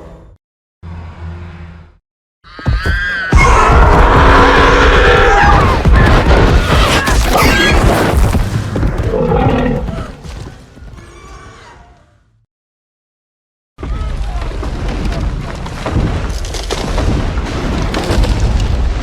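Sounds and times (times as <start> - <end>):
monster roar: 3.3 - 5.9, 6.6 - 8.2, 9.0 - 10.2.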